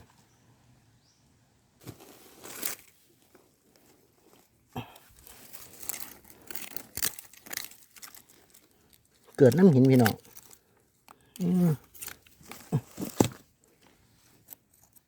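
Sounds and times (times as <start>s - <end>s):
dry material crinkling: 1.8s - 15.0s.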